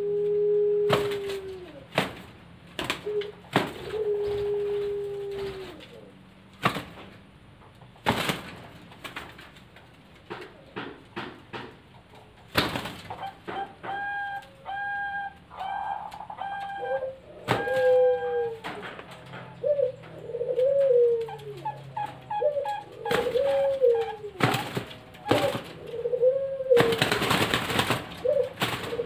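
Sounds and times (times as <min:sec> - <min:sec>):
doves cooing: 0:00.0 - 0:06.7, 0:11.6 - 0:29.0
sharp knocks: 0:10.3 - 0:11.9.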